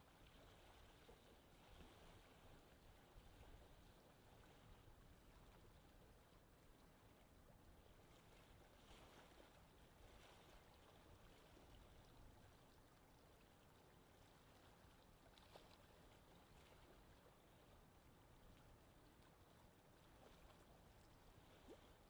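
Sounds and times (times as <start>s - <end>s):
gentle wind: 0.0s - 22.0s.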